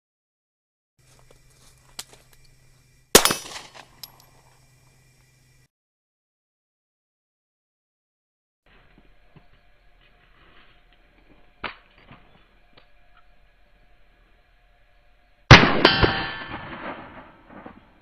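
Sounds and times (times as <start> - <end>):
loud metallic clang: 15.5 - 17.8.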